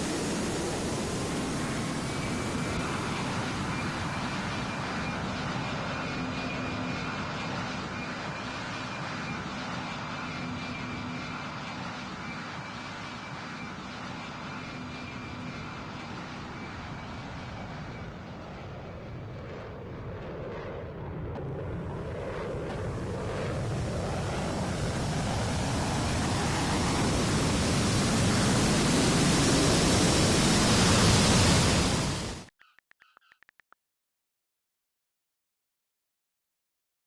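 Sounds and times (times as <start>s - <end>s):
airplane engine: 0.0s - 32.5s.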